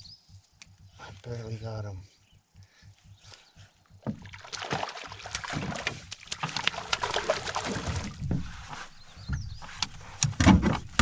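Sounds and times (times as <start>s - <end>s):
knocks against canoe: 4.0s - 4.8s
fish splashing in water: 4.2s - 8.2s.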